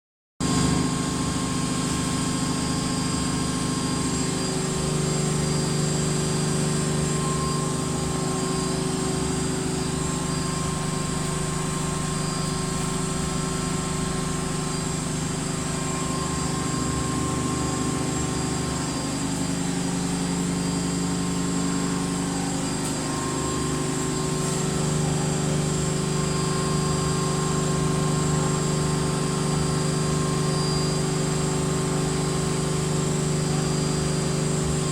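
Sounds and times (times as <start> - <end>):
washing machine spinning: 0.4 - 34.9.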